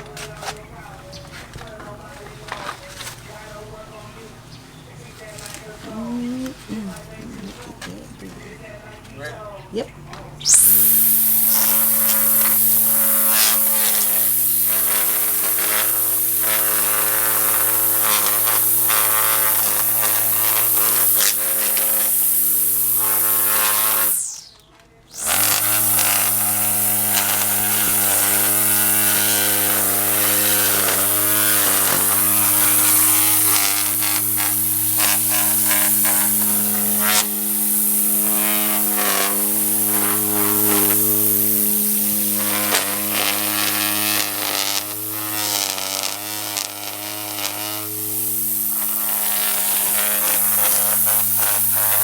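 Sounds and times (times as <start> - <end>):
string trimmer whining: 5.3 - 8.6, 10.4 - 52.0
trimmer line ticking: 10.4 - 24.5, 25.1 - 52.0.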